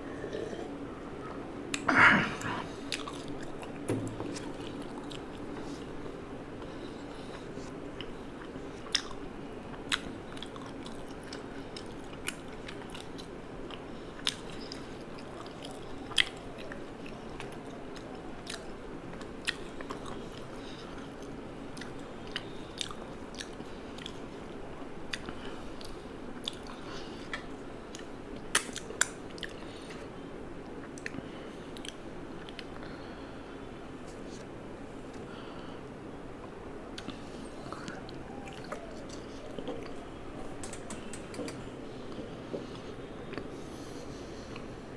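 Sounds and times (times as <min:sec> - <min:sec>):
steady low hum: 0:00.0 - 0:44.9
chewing: 0:02.8 - 0:05.9, 0:06.6 - 0:24.5, 0:25.1 - 0:30.0, 0:37.0 - 0:40.0
sharp crunchy clicks: 0:40.6 - 0:41.6.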